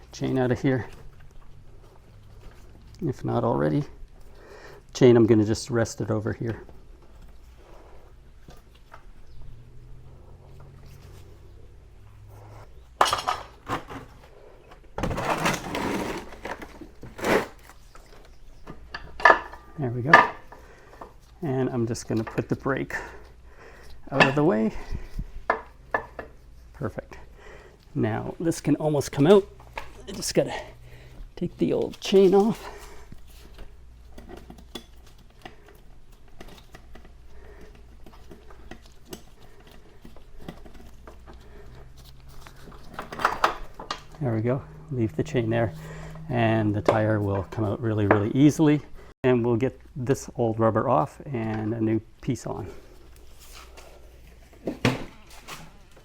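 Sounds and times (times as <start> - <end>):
metal parts clinking and rattling: 13.0 - 14.2, 33.4 - 44.8.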